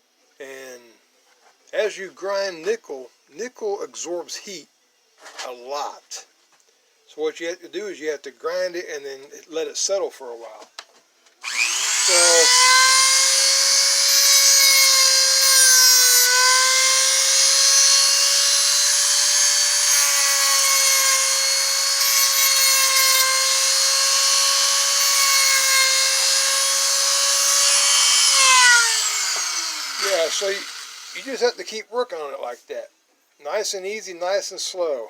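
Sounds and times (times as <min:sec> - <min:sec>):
power grinder whining: 0:11.4 - 0:31.6.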